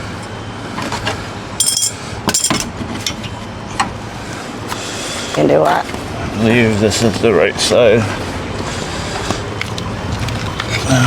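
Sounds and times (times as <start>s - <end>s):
steady low hum: 0.0s - 11.0s
metal parts clinking: 1.6s - 2.6s.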